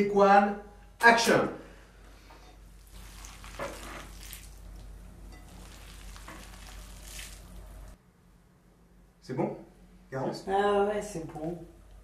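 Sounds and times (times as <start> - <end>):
food sizzling in a frying pan: 2.8 - 8.0.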